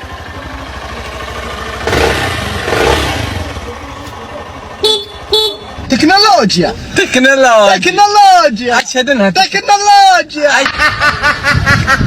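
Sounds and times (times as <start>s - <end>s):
small engine revving: 1.0s - 3.8s.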